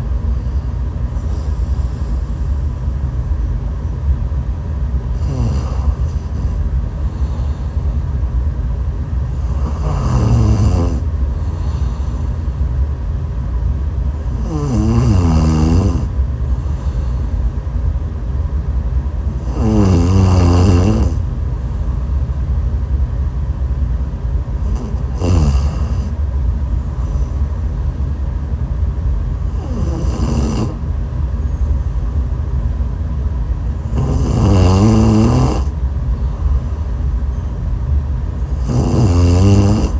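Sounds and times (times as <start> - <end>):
steady low rumble: 0.0 - 39.9
person snoring: 5.1 - 7.8, 9.4 - 12.3, 14.3 - 17.2, 19.3 - 21.3, 24.6 - 26.2, 29.5 - 30.8, 33.8 - 35.8, 38.5 - 39.9.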